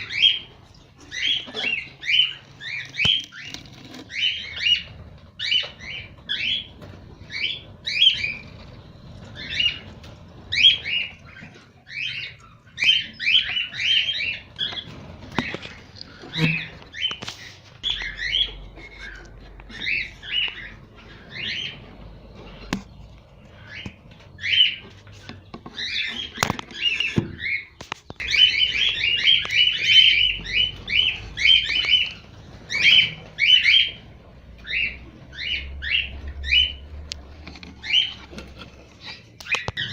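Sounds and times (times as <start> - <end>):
cockatiels chirping: 0.0 - 39.9.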